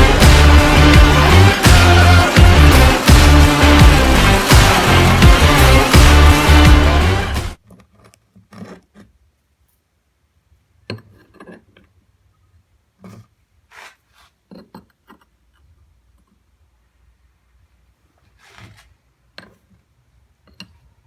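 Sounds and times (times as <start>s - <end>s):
loud music: 0.0s - 7.6s.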